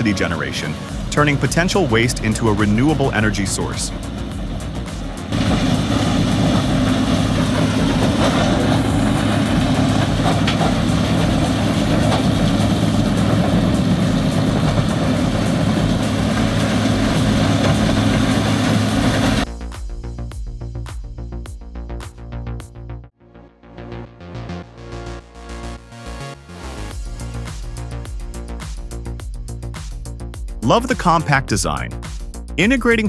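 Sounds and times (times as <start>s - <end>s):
heavy machinery running: 0.0s - 19.5s.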